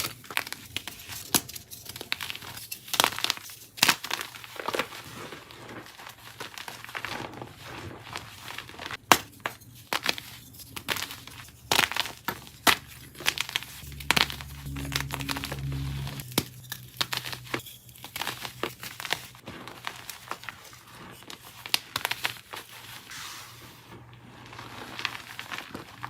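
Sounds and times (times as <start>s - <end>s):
low steady hum: 12.5s - 19.4s.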